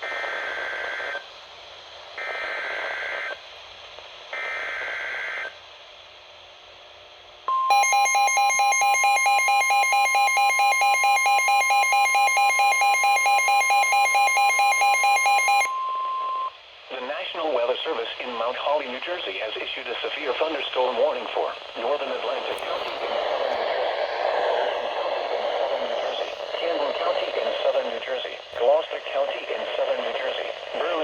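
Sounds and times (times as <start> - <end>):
rapidly pulsing alarm beep: 7.5 - 16.5
steady high alarm tone: 7.5 - 16.5.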